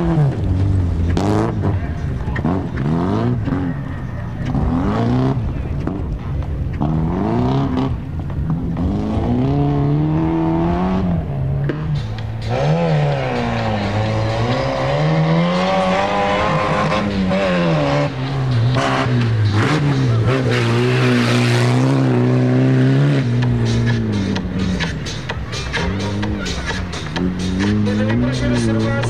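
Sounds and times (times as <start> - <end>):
racing vehicle engine revving: 0.0 - 29.0.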